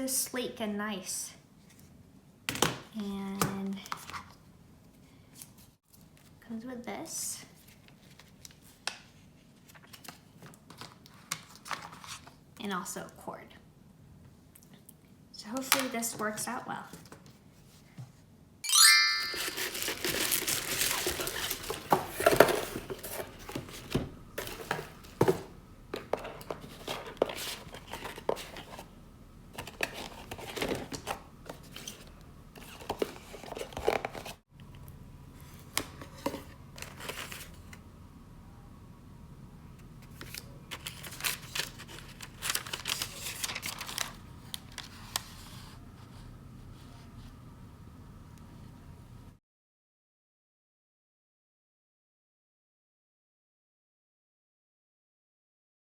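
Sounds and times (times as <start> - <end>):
plastic packaging crinkling: 19.4 - 23.8, 40.1 - 45.0
plastic ripping: 19.5 - 21.9.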